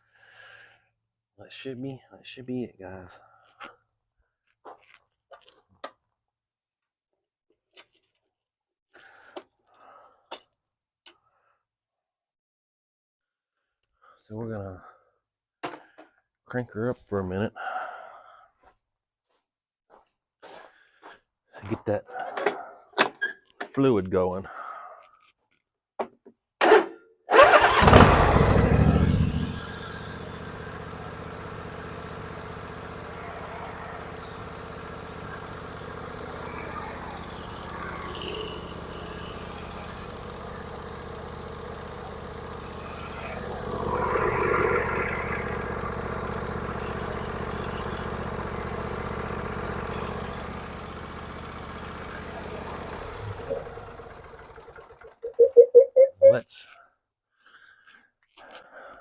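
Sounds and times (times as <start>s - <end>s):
lawnmower engine starting and running: 27.3s - 55.3s.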